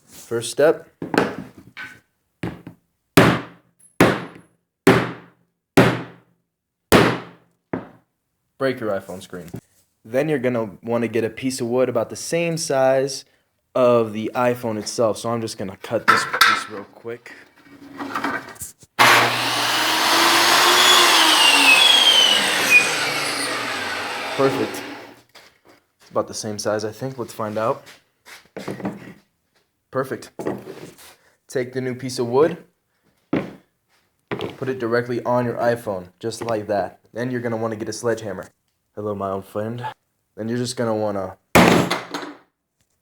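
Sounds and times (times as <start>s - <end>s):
hard blows banging: 6.9s - 8.0s
electric saw cutting wood: 19.0s - 25.2s.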